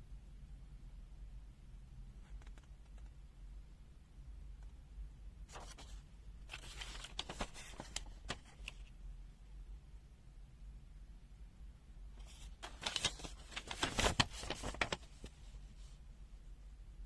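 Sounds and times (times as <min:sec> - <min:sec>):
low steady hum: 0:00.0 - 0:17.0
handling rustling: 0:05.5 - 0:08.8, 0:12.2 - 0:16.0.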